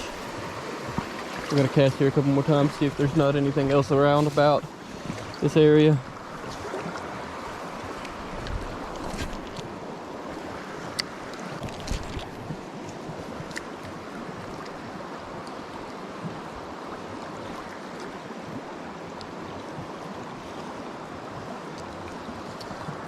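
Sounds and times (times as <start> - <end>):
river flowing over rocks: 0.0 - 4.1.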